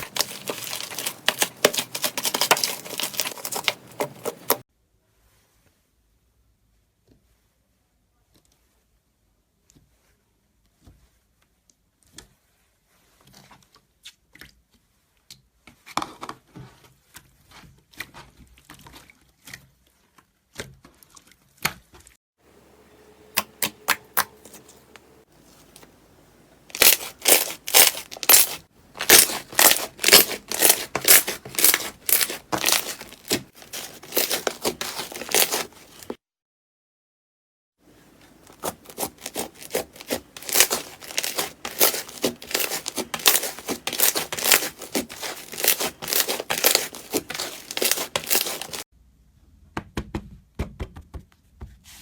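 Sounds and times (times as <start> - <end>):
slime squeezed by hand crackling: 0.0 - 4.6, 26.7 - 36.1, 38.6 - 48.8.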